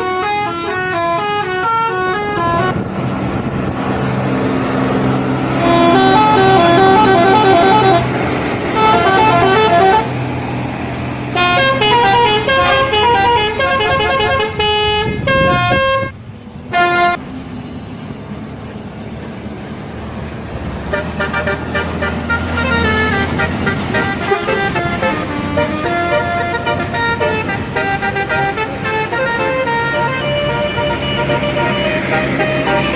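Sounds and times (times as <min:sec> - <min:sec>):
musical bus horn: 0:00.0 - 0:02.8, 0:05.5 - 0:10.3, 0:11.3 - 0:17.2, 0:20.8 - 0:32.9
bus engine humming: 0:00.0 - 0:32.9.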